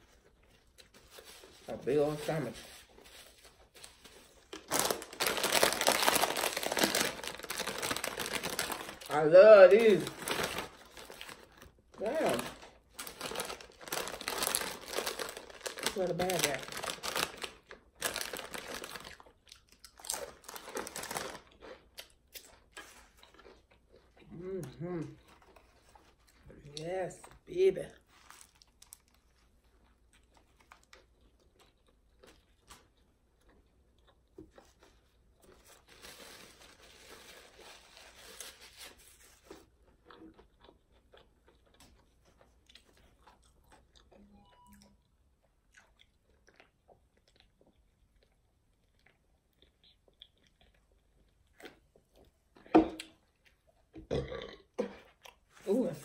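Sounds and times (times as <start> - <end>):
chewing and crunching: 9.8 - 27.4, 28.0 - 35.9, 39.2 - 56.0
loud burp: 54.1 - 54.7.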